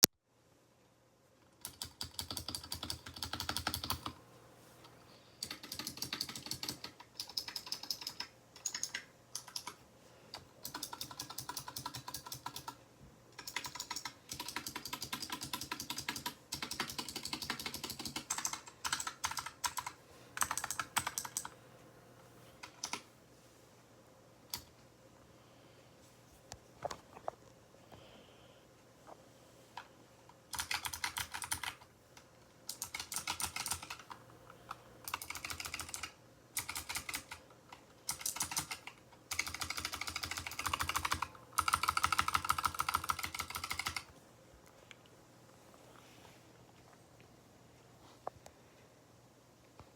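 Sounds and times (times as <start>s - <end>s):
mechanical keyboard typing: 1.6s - 4.2s, 5.4s - 12.8s, 13.4s - 21.6s, 22.6s - 23.1s, 30.5s - 31.9s, 32.7s - 37.4s, 38.0s - 44.1s.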